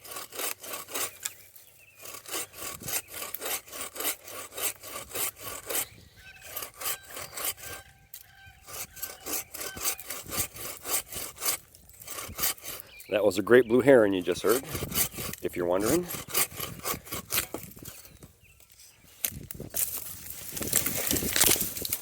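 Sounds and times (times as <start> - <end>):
hand saw cutting branch: 0.0 - 8.0, 8.6 - 18.2, 19.2 - 22.0.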